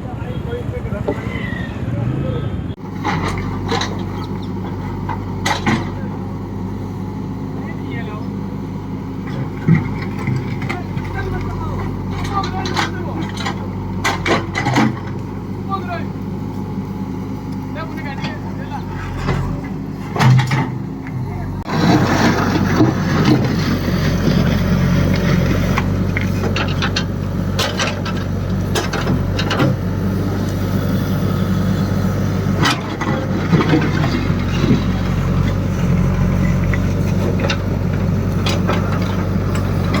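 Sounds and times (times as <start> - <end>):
heavy machine engine running: 2.1 - 40.0
metal clanks and knocks: 2.9 - 6.2, 9.2 - 15.3, 17.9 - 30.6, 32.4 - 40.0.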